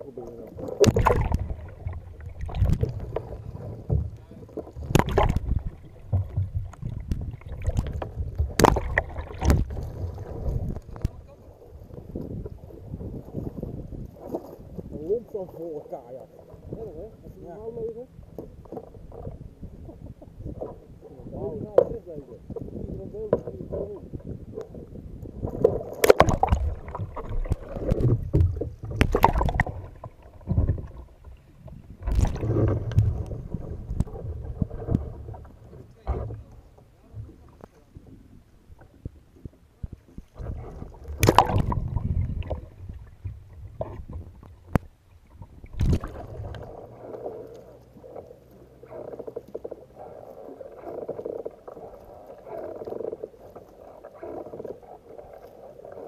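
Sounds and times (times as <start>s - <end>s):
water splashing around kayak: 0.0s - 56.0s
loud splashes or knocks: 0.8s - 3.1s, 4.8s - 9.8s, 26.0s - 31.0s, 32.0s - 34.2s, 40.4s - 42.6s, 45.7s - 46.5s.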